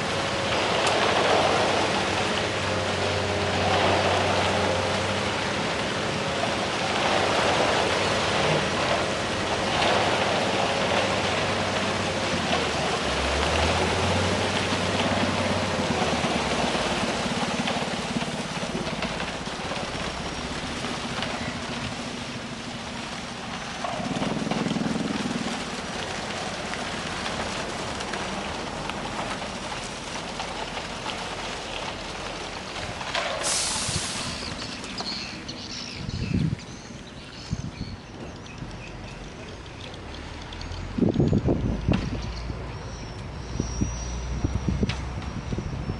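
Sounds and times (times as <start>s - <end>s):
heavy diesel machinery running: 0.0s - 36.0s
constant hiss: 0.0s - 37.4s.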